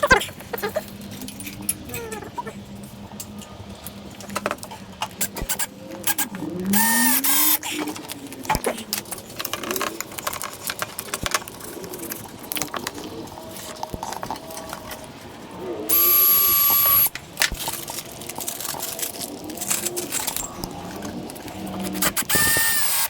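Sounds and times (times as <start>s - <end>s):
cordless driver spinning screw: 5.2s - 7.7s, 15.9s - 17.1s, 21.9s - 23.0s.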